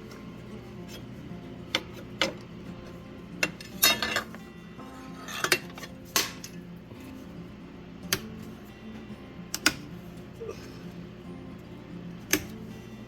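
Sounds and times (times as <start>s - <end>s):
metal parts clinking: 3.5s - 4.3s.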